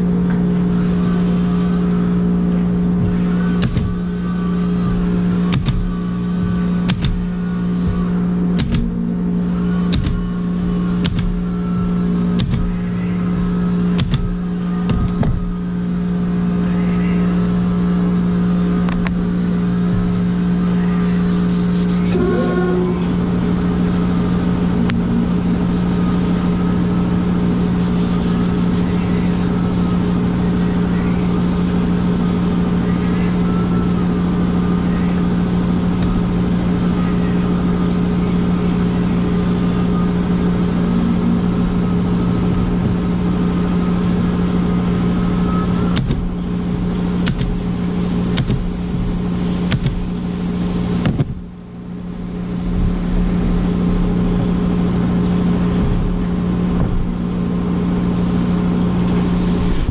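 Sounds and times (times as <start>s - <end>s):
woodworking router whining: 22.0s - 31.2s.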